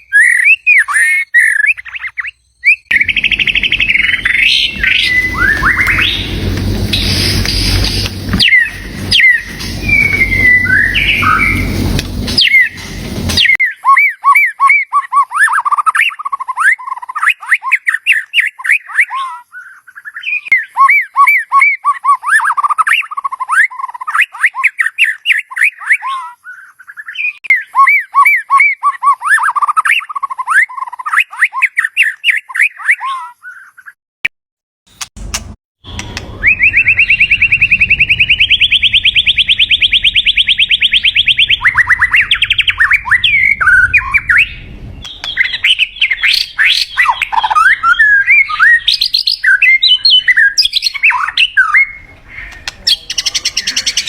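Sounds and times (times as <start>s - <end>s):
bird whistling song: 0.0s - 34.0s, 36.0s - 54.0s
loud rushing noise: 2.9s - 13.6s, 41.8s - 46.4s.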